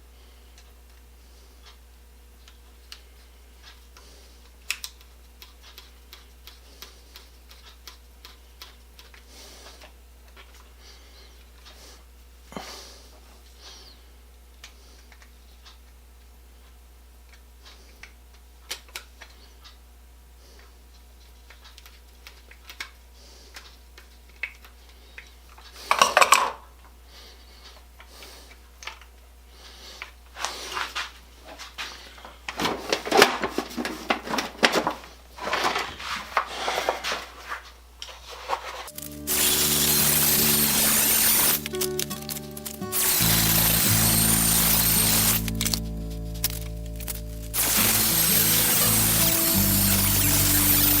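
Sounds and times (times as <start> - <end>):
metal parts clinking: 38.9 - 51.0.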